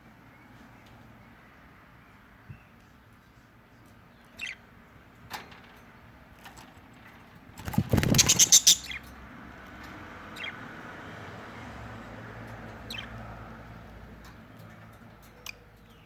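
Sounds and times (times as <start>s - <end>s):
budgerigars chirping: 4.4s - 4.6s, 7.9s - 9.0s, 12.8s - 13.2s.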